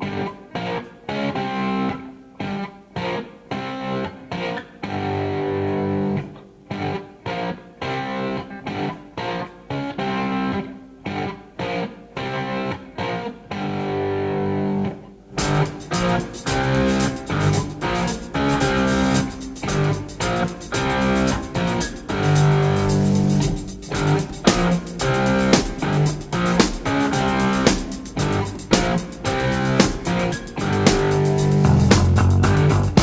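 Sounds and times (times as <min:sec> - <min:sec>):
plucked background music: 0:15.4 - 0:33.0.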